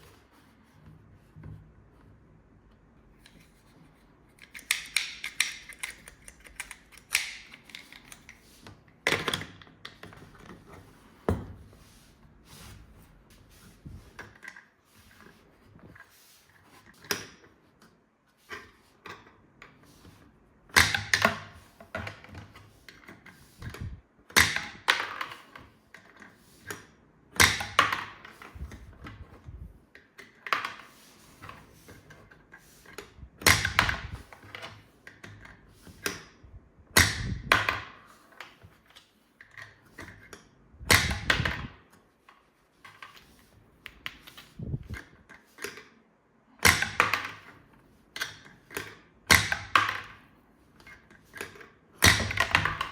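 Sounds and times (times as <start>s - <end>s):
plastic toy parts clicking: 4.3s - 8.4s.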